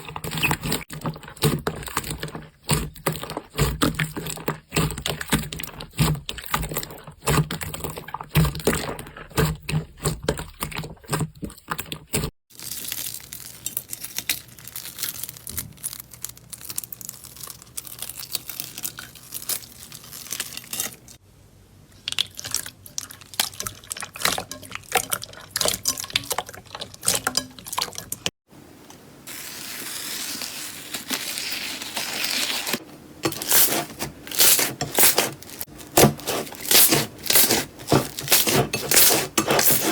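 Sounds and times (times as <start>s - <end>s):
slime squishing and crackling: 0.0s - 21.2s, 29.3s - 39.9s.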